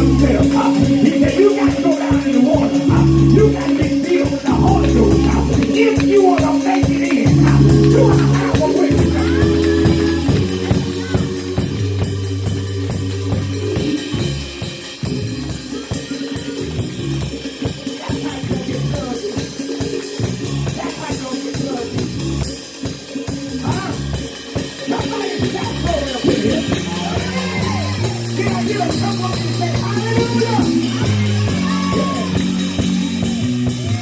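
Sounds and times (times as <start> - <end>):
church band music: 0.0 - 34.0
drum kit steady beat: 0.0 - 34.0
sustained low notes: 4.5 - 5.8, 7.2 - 14.5.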